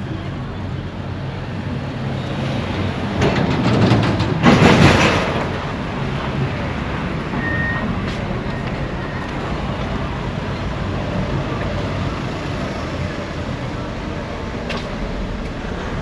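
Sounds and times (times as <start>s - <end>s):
low engine hum: 6.0s - 16.0s.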